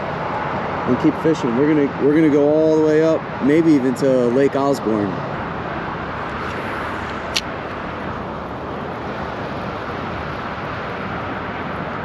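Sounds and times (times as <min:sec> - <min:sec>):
stream rushing: 0:00.0 - 0:12.0
sharp click: 0:06.4 - 0:07.5.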